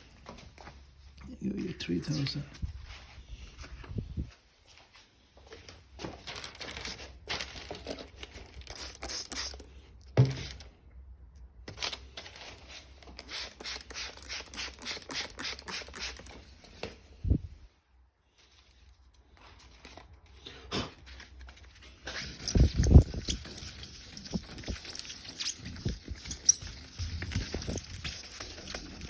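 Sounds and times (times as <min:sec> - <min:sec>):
sandpaper rasping back and forth: 0:22.1 - 0:29.0.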